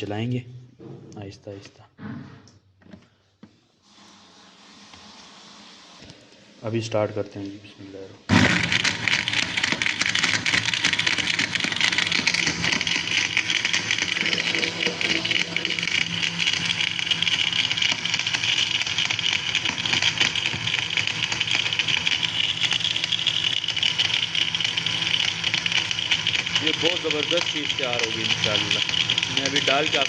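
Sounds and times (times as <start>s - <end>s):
electric blender running: 8.3s - 30.0s.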